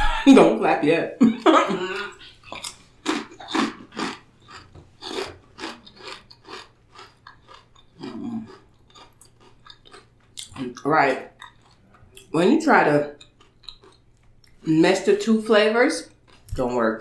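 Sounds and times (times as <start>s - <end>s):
person chewing crunchy food: 1.8s - 12.3s, 13.1s - 14.7s, 16.0s - 16.8s.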